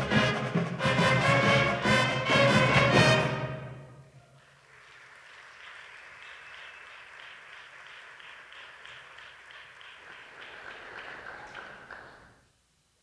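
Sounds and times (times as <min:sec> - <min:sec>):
audience applauding: 0:04.4 - 0:12.4.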